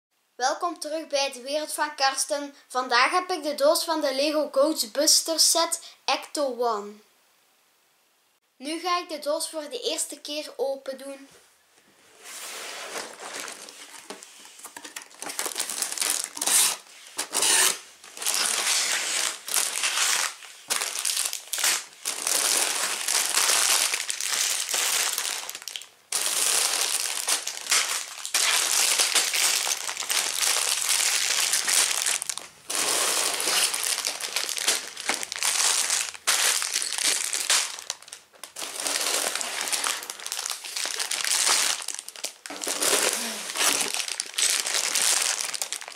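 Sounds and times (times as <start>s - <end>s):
plastic bags crinkling: 12.8s - 45.9s.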